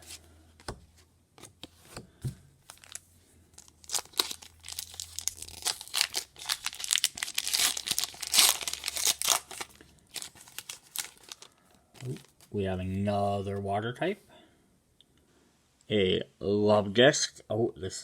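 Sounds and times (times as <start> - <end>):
wrapper tearing and crinkling: 2.7 - 3.0, 3.6 - 12.4.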